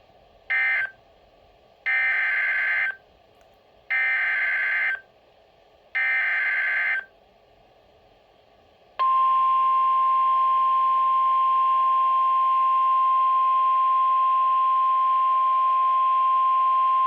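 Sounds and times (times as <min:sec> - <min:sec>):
steady alarm beep: 0:09.0 - 0:17.0.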